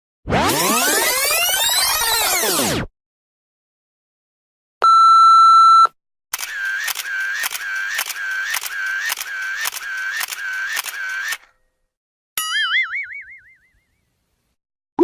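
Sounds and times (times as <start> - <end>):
steady censor beep: 4.8 - 5.9.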